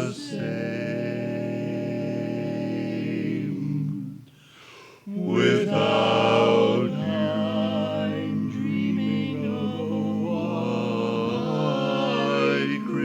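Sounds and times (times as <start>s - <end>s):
a cappella voices in harmony: 0.0s - 13.0s
breath: 4.3s - 5.1s.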